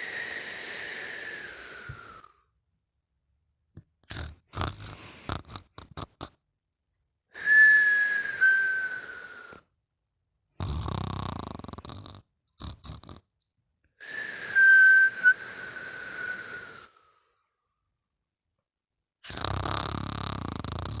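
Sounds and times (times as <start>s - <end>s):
person snoring: 0.0s - 2.4s, 4.0s - 6.4s, 7.4s - 9.6s, 10.6s - 13.2s, 14.0s - 17.2s, 19.2s - 21.0s
whistling breath: 0.0s - 2.5s, 7.4s - 9.7s, 14.0s - 17.5s.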